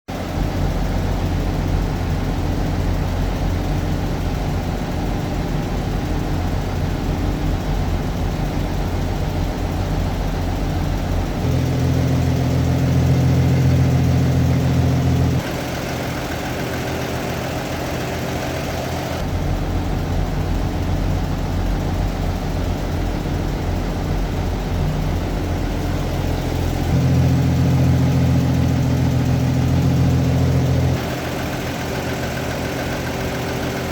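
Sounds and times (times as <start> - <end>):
car engine idling: 0.1 - 33.9.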